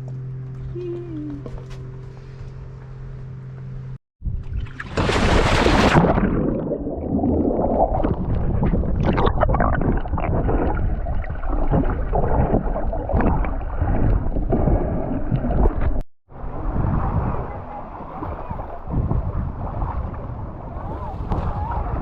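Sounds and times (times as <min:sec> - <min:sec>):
splash into water: 0:04.4 - 0:14.8
muffled underwater bubbling: 0:04.5 - 0:16.0.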